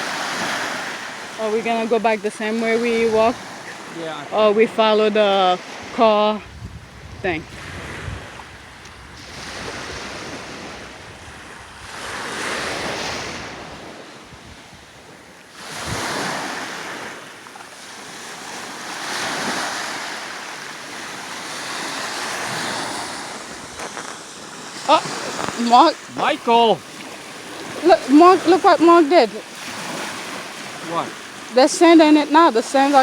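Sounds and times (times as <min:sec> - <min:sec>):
small waves washing on beach: 0:00.0 - 0:33.0
wind rumble on microphone: 0:02.6 - 0:03.5, 0:05.7 - 0:17.2.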